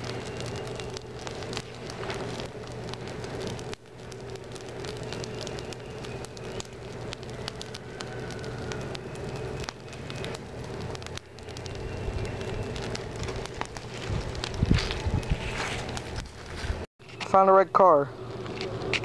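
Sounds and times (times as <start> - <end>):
fire crackling and popping: 0.0 - 19.0.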